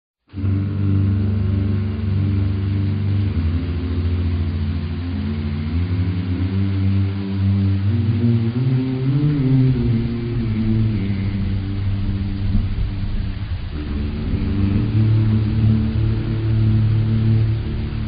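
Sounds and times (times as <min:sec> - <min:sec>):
deep male voices humming: 0:00.3 - 0:18.0
rain falling: 0:00.5 - 0:18.0.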